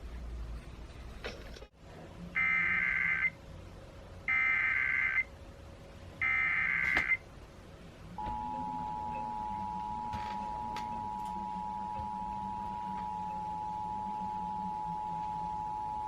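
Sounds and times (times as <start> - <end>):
two-tone attention signal: 8.2 - 16.0.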